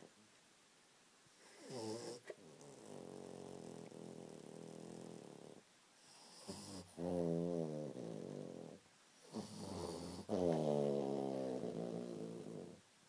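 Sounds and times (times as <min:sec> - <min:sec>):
person snoring: 0:06.3 - 0:12.8.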